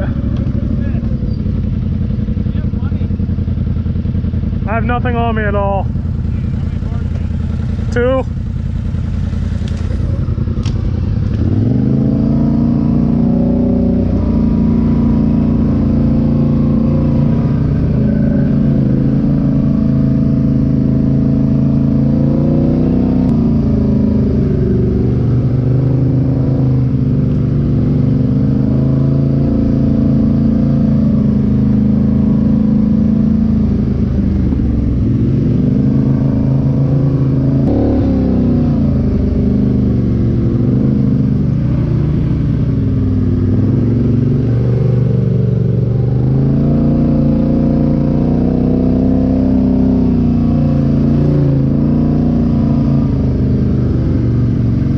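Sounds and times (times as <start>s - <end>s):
atv engine revving: 0.0s - 54.9s.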